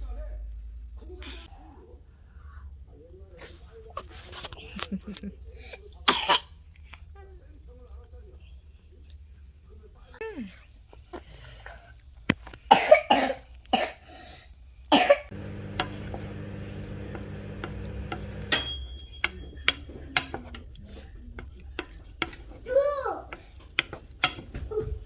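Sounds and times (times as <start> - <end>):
person coughing: 12.7 - 14.0, 14.9 - 16.4
machine hum: 15.3 - 19.3
tableware clicking: 15.4 - 20.6.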